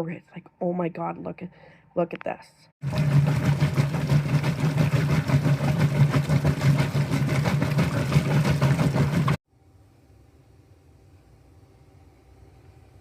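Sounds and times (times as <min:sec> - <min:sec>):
washing machine churning: 0:02.8 - 0:09.4.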